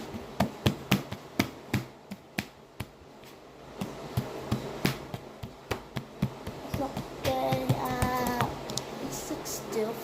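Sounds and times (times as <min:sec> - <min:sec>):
sharp irregular clicks and taps: 0:03.8 - 0:08.9.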